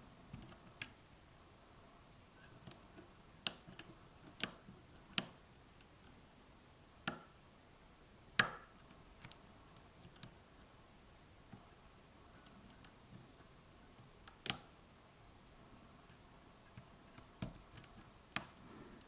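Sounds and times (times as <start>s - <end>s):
lock pick metallic clicks: 3.4s - 5.9s.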